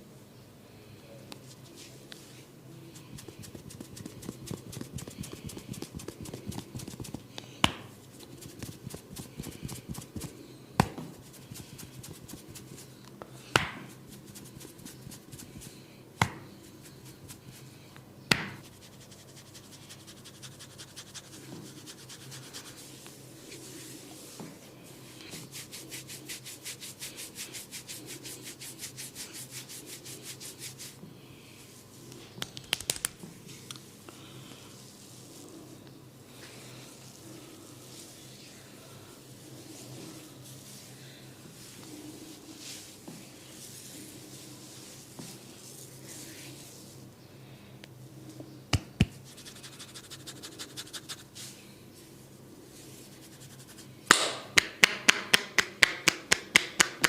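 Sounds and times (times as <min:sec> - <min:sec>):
scratching strokes on head: 0:01.4 - 0:10.4, 0:11.0 - 0:13.0, 0:13.8 - 0:17.8, 0:18.6 - 0:31.0, 0:36.4 - 0:38.7, 0:41.6 - 0:47.0, 0:48.8 - 0:51.6, 0:52.7 - 0:54.0
hands rubbing a scalp: 0:01.4 - 0:17.8, 0:18.4 - 0:31.0, 0:32.0 - 0:33.6, 0:48.8 - 0:51.6, 0:52.7 - 0:53.9.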